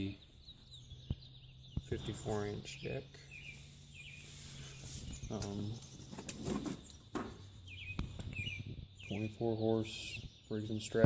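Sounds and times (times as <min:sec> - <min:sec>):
small birds chirping: 0:00.0 - 0:11.0.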